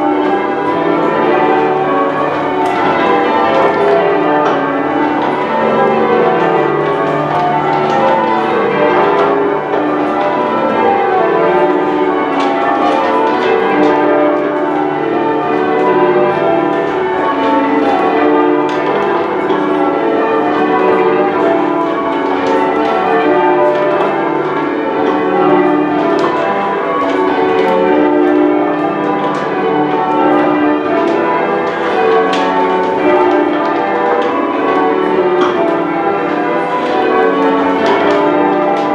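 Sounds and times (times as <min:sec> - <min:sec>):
church bells change ringing: 0:00.0 - 0:38.9.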